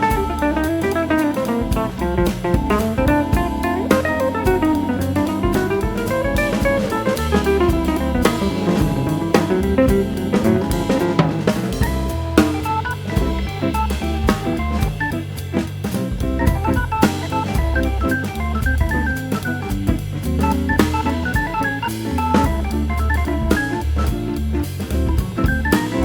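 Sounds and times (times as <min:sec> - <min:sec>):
melodic instrumental runs: 0:00.0 - 0:24.4, 0:25.0 - 0:26.0
bass line: 0:00.0 - 0:26.0
drum kit beat: 0:00.0 - 0:26.0.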